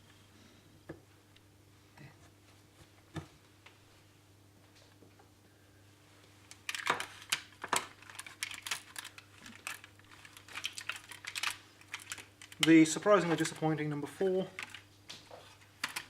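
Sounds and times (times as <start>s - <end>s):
nuts crackling in a bowl: 6.4s - 16.0s.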